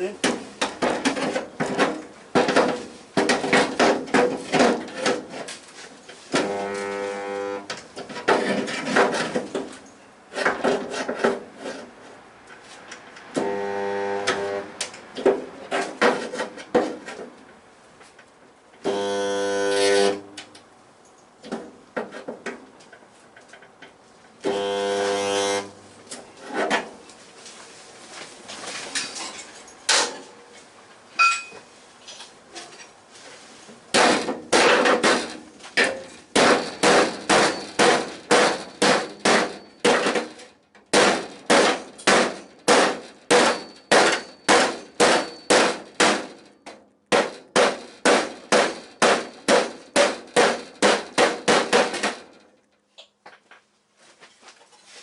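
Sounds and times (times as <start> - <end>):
electric welding buzz: 6.4 - 7.7, 13.4 - 14.8, 18.8 - 20.3, 24.4 - 25.8
hammer striking sheet steel: 34.0 - 40.4, 41.0 - 46.4, 47.1 - 52.3.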